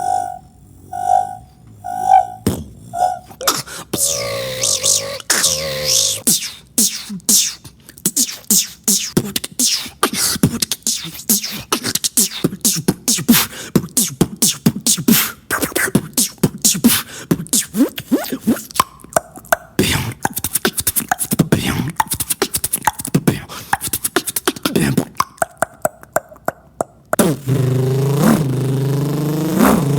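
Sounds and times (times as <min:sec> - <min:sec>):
beatboxing clicks and sweeps: 0:01.0 - 0:29.9.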